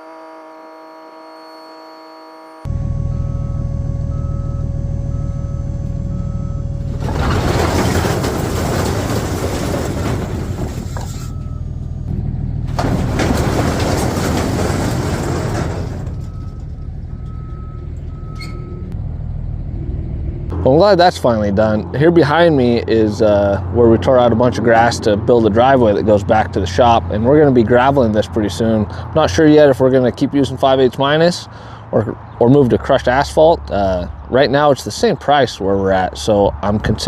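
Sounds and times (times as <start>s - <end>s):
reversing alarm beeping: 0.0s - 7.2s, 11.0s - 12.1s, 15.6s - 19.0s
heavy vehicle engine running: 2.6s - 34.3s.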